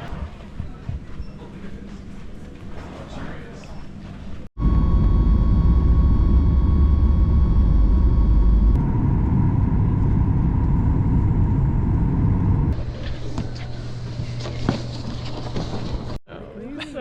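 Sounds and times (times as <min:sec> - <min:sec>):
vehicle rumble: 0:04.6 - 0:13.6
thin steady whine: 0:04.6 - 0:16.1.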